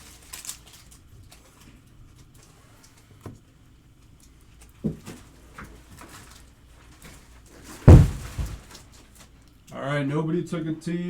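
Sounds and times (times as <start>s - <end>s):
knock on tabletop: 7.9s - 8.6s
low thump: 7.9s - 8.6s.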